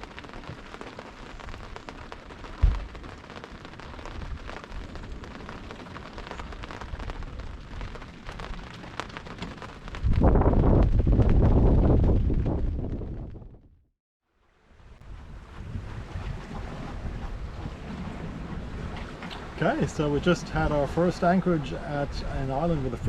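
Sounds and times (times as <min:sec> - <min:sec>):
rain pattering on water: 0:00.0 - 0:13.6, 0:14.4 - 0:23.0
wind buffeting microphone: 0:00.0 - 0:13.8, 0:14.8 - 0:23.0
short low thump: 0:02.6 - 0:02.8.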